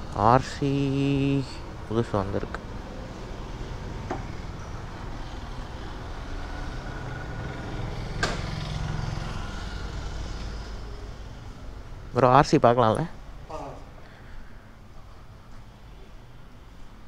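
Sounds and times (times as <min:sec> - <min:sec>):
vehicle engine rumbling: 0:00.0 - 0:15.3.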